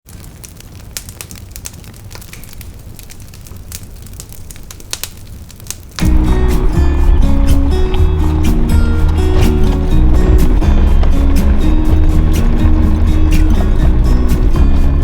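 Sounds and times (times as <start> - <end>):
campfire crackling and popping: 0.0 - 15.0
loud music: 6.0 - 15.0
low rumble: 6.0 - 15.0.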